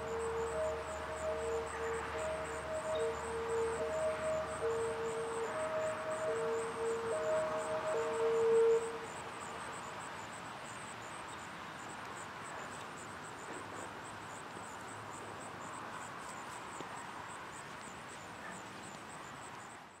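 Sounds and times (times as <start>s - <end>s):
insects chirping: 0.0s - 13.2s
steady background hiss: 0.0s - 20.0s.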